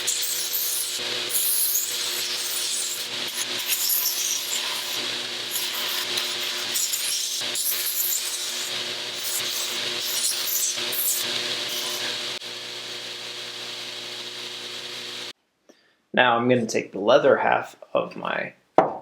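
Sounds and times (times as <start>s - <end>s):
wood rasping against sander belt: 0.0s - 12.4s
belt sander motor hum: 0.0s - 15.3s.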